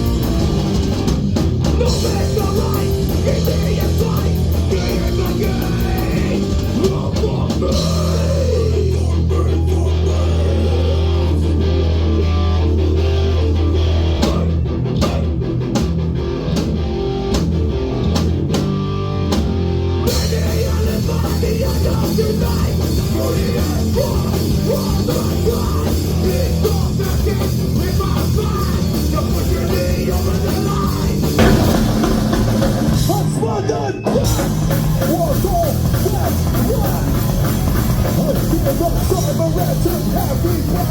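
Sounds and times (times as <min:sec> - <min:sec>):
loud rock band playing: 0:00.0 - 0:40.9
crashing cymbals: 0:31.4 - 0:33.4.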